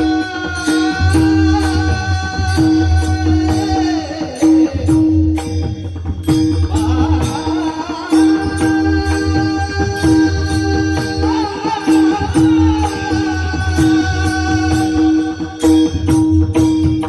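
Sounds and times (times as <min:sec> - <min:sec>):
person singing long notes: 0:00.0 - 0:05.0
metallic hand-cymbal beats: 0:00.0 - 0:17.0.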